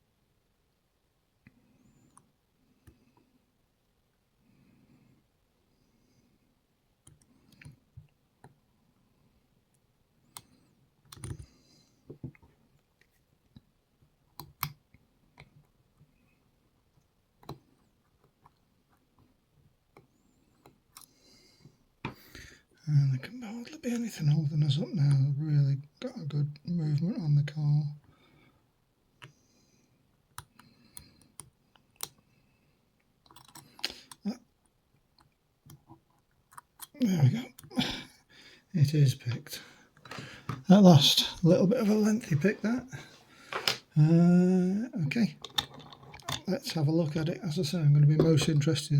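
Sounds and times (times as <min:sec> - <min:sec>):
lock picks clicking in lock: 0:33.2 - 0:33.8
lock picks clicking and scraping: 0:33.2 - 0:34.2, 0:45.4 - 0:46.5.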